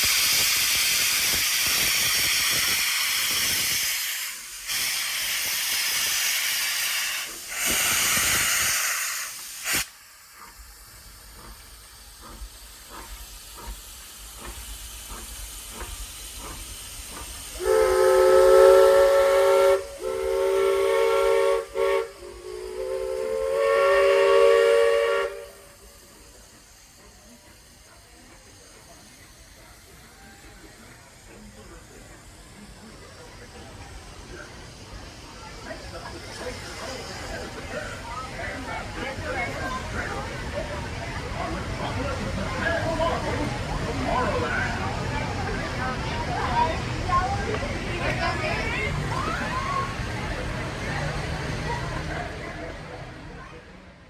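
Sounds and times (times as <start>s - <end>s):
steam hissing: 0.0s - 53.6s
steam locomotive exhaust beats: 0.0s - 54.0s
steam whistle blasts: 17.6s - 25.9s.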